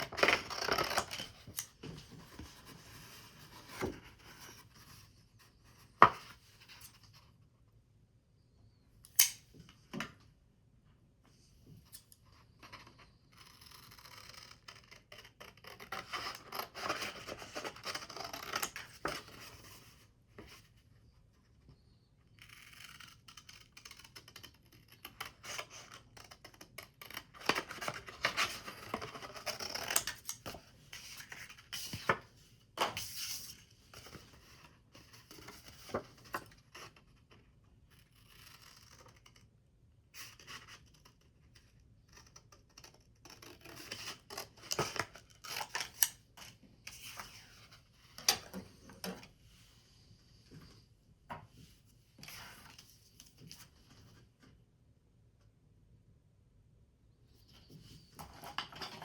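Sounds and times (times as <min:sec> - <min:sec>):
scissors cutting paper: 0:00.0 - 0:01.7, 0:22.5 - 0:32.2, 0:42.2 - 0:47.4.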